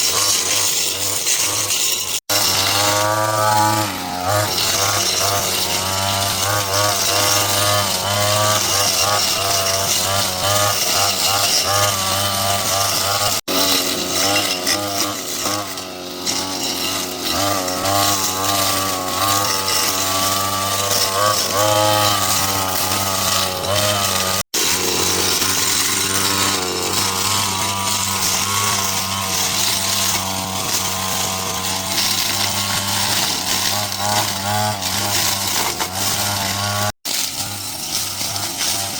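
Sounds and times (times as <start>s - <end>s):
petrol cutting tool engine: 0.0s - 38.9s.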